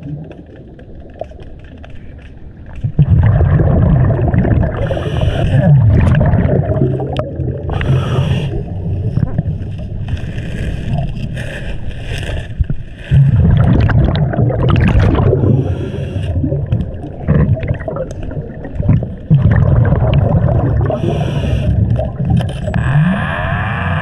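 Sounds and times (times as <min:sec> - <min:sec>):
bubbles gurgling underwater: 0:00.0 - 0:01.6, 0:02.7 - 0:11.2, 0:13.1 - 0:23.2
scuba regulator hissing: 0:07.7 - 0:08.7, 0:20.9 - 0:21.8.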